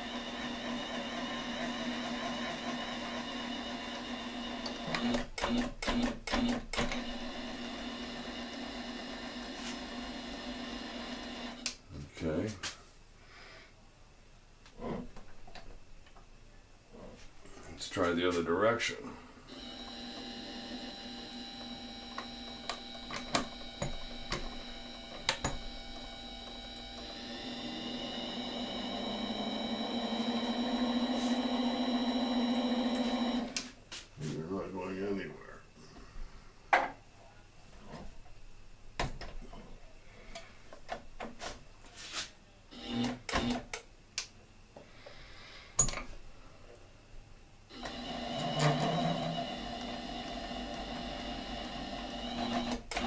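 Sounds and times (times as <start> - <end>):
lathe motor whine: 0.0 - 5.2, 6.9 - 11.7, 19.5 - 33.6, 47.7 - 53.0.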